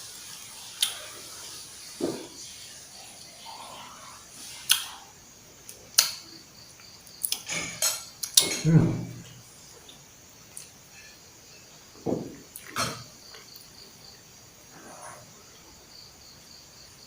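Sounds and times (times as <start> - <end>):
cutlery clinking on a plate: 7.4 - 8.7.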